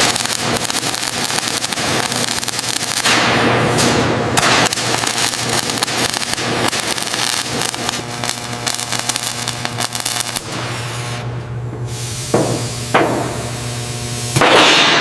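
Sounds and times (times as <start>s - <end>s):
dense crackling clicks: 0.0s - 3.3s, 4.4s - 10.6s
steady low hum: 0.0s - 15.0s.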